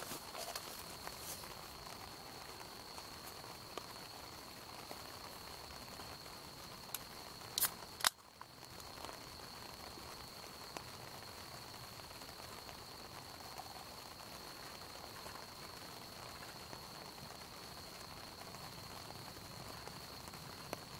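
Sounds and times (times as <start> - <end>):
fire pops: 0.0 - 11.0
campfire crackling: 0.0 - 20.9.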